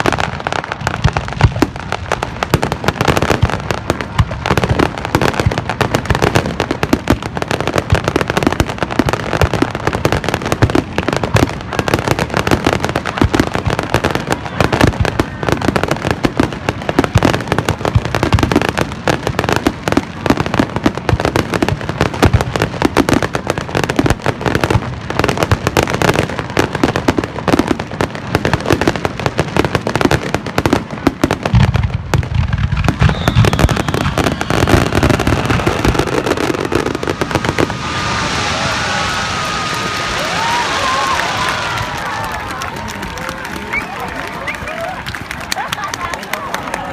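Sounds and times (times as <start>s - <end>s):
fireworks bangs and crackling: 0.0s - 46.9s.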